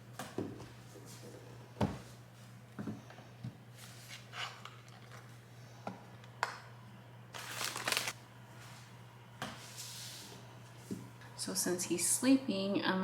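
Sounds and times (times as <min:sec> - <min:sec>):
cloth rustling: 0:07.4 - 0:08.2.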